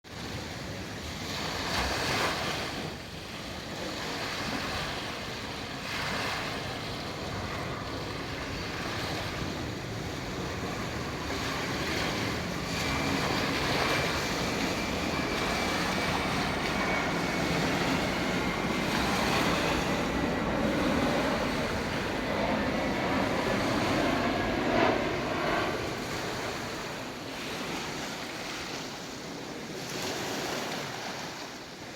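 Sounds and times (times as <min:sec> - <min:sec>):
waves breaking on a beach: 0:00.1 - 0:31.9
wind buffeting microphone: 0:00.2 - 0:31.7
faint high whine: 0:05.7 - 0:30.9.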